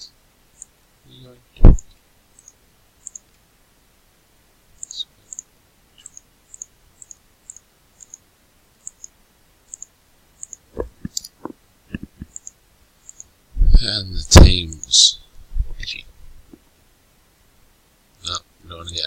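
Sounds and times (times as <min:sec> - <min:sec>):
computer mouse button clicking: 0:02.4 - 0:03.3, 0:09.7 - 0:11.3.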